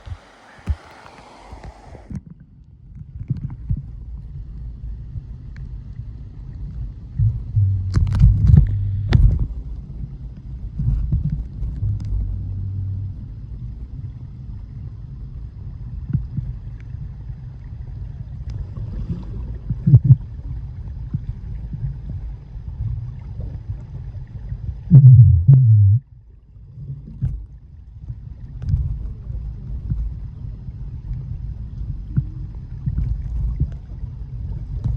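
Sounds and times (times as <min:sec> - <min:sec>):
underwater waterfall rumble: 0:00.0 - 0:02.2, 0:07.0 - 0:16.6, 0:24.5 - 0:26.0
sharp clicks and knocks: 0:07.2 - 0:09.5.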